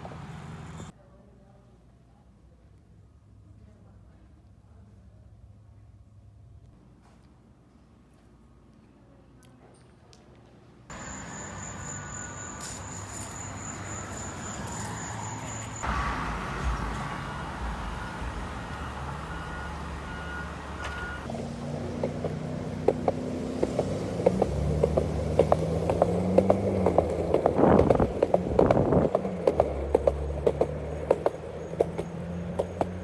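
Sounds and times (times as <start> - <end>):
road traffic passing: 0.0 - 0.9, 10.9 - 33.0
steady high tone: 10.9 - 21.3
regular clacking: 22.0 - 33.0.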